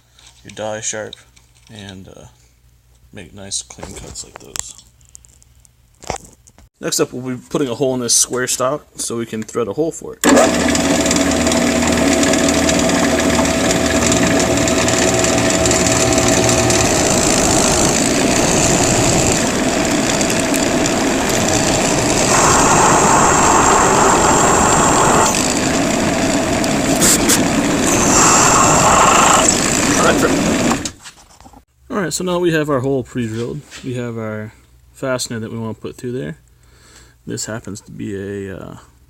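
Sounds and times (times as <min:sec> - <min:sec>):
electric drill boring metal: 0:10.2 - 0:31.0.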